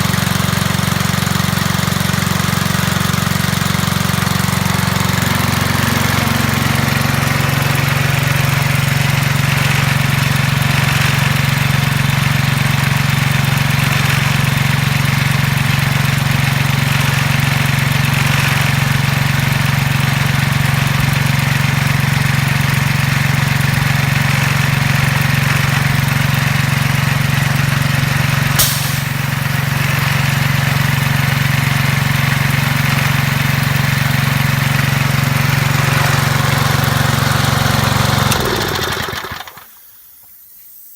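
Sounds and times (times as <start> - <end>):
air compressor running: 0.0 - 39.9
sharp air hiss: 28.5 - 29.6, 39.5 - 40.9.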